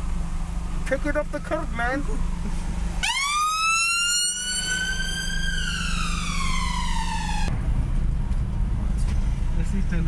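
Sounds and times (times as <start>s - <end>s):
car engine and road noise: 0.0s - 10.0s
siren wailing: 1.0s - 7.5s.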